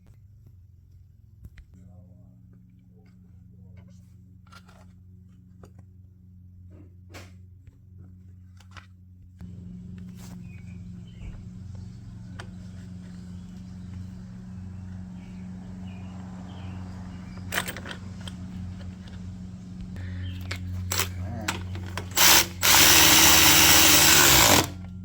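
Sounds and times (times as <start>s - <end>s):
pressure washer engine running: 9.5s - 24.9s.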